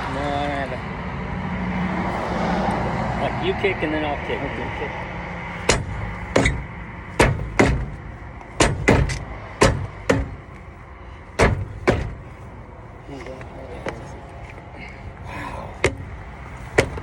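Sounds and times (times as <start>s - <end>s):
kicks thudding against car wheel: 5.6s - 10.7s, 11.3s - 12.3s, 15.8s - 17.0s.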